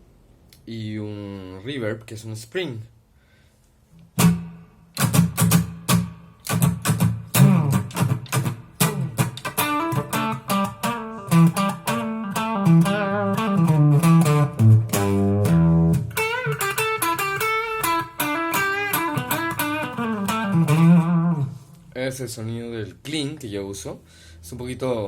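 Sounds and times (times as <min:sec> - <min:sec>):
electric guitar with echo and reverb: 0:04.2 - 0:21.6.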